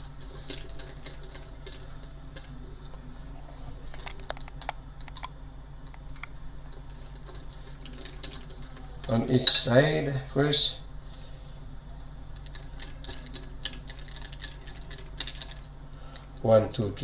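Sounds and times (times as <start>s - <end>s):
steady low hum: 0.0s - 17.0s
screwdriver clicks and taps: 3.9s - 5.3s.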